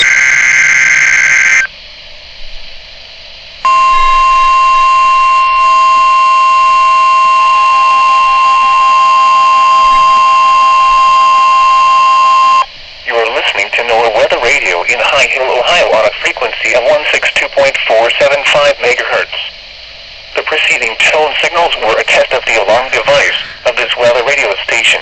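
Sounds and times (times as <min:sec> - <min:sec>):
buzzy digital data burst: 0:00.0 - 0:01.7
steady warning alarm tone: 0:00.0 - 0:01.8, 0:03.6 - 0:19.4, 0:20.4 - 0:25.0
faint pulsing tone: 0:03.6 - 0:12.7.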